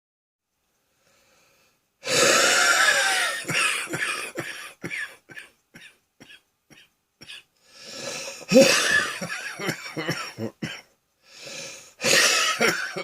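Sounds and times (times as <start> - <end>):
person coughing wheezily: 2.0 - 10.9, 12.0 - 13.0.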